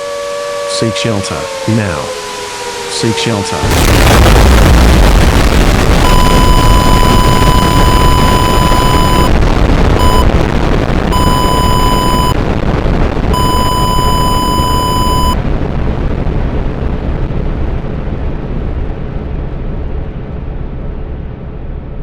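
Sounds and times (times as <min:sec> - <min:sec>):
blast-like rumbling: 0:00.7 - 0:22.0
high beep tone: 0:06.0 - 0:09.3, 0:10.0 - 0:10.3, 0:11.1 - 0:12.4, 0:13.4 - 0:15.4.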